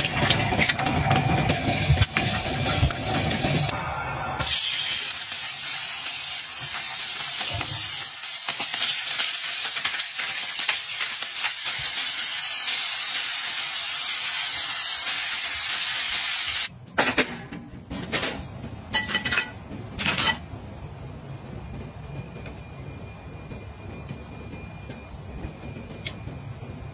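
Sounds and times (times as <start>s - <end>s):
food sizzling in a pan: 4.4s - 16.7s.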